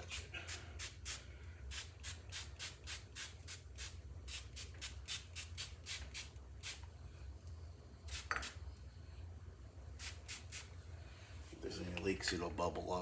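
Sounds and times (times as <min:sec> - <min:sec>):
spray bottle squirting: 0:00.0 - 0:06.8, 0:08.1 - 0:08.6, 0:10.0 - 0:10.7.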